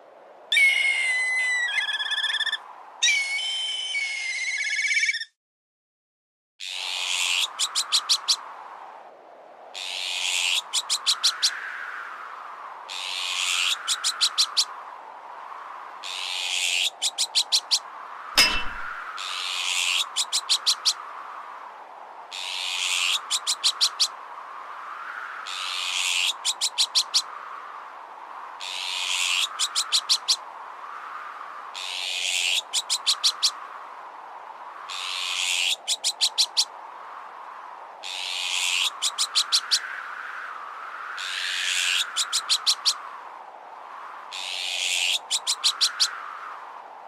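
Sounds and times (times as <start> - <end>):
whistling wind: 0.0 - 5.1, 6.8 - 47.0
magpie alarm calls: 0.5 - 5.2.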